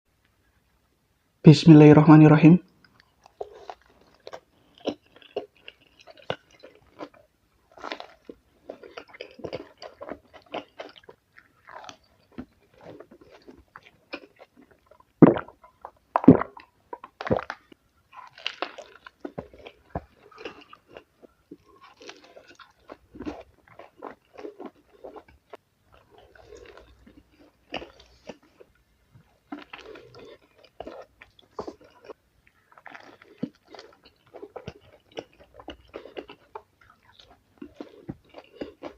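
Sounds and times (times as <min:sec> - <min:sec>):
crunchy chewing and biting: 0:02.8 - 0:38.9.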